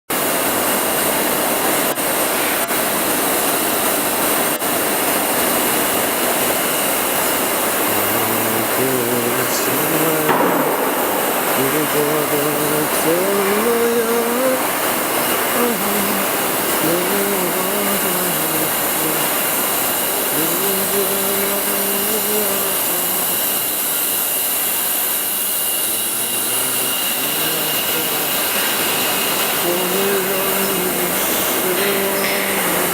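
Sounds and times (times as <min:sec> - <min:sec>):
factory machinery hissing drone: 0:00.1 - 0:32.9
low pitched hum: 0:07.3 - 0:19.4.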